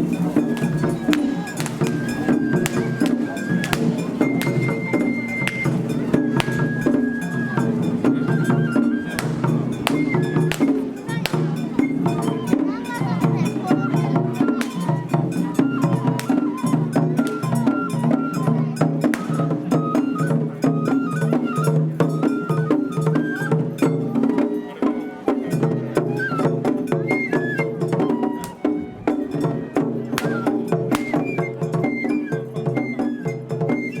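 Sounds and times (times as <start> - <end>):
high melody: 0.0 - 18.4
sharp clicking percussion strokes: 0.0 - 24.3, 25.1 - 33.9.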